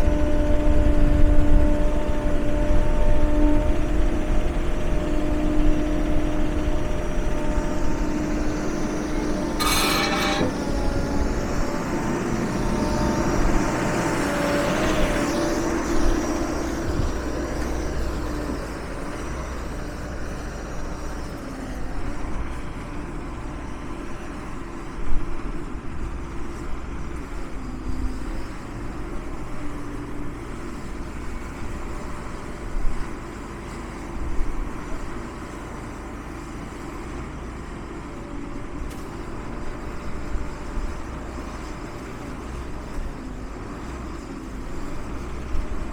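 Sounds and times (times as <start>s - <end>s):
log baler engine running: 0.0s - 45.9s
pitched whine: 6.7s - 18.4s
sharp metallic knocks: 9.5s - 10.9s.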